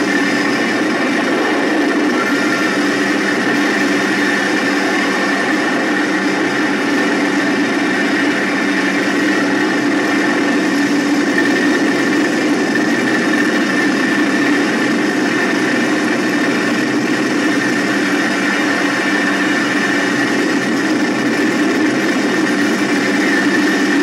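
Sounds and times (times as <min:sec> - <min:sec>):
vehicle engine running with whine: 0:00.0 - 0:24.0.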